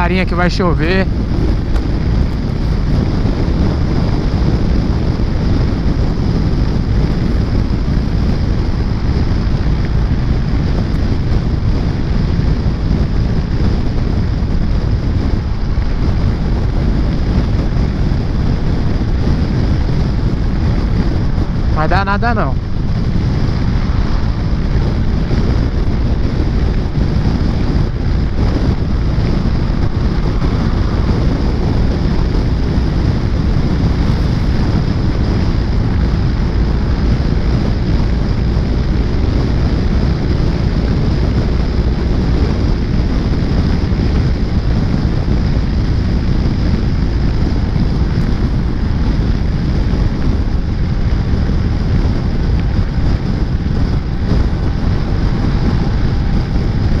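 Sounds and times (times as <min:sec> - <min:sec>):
wind buffeting microphone: 0:00.0 - 0:57.0
scooter engine: 0:41.8 - 0:57.0.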